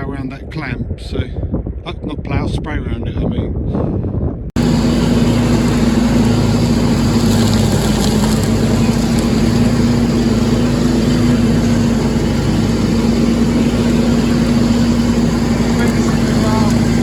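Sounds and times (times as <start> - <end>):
tractor engine running: 4.6 - 17.0.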